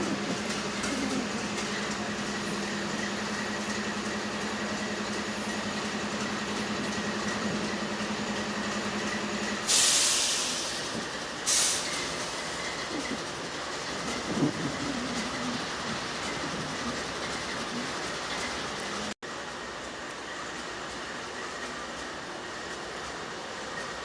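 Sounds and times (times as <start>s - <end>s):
train pulsing hum: 0.0s - 24.0s
compressed air hissing: 9.7s - 10.9s, 11.5s - 12.5s.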